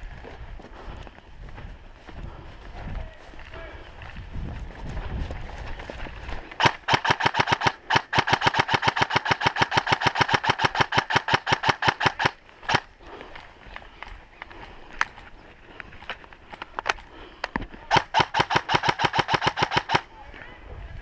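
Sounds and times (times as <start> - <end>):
airsoft gun firing full-auto: 6.6 - 12.9, 17.9 - 20.1.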